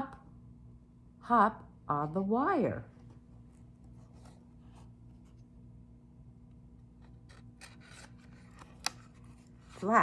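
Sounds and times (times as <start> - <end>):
steady low hum: 0.0 - 10.0
faint rustles and scrapes: 2.9 - 5.6.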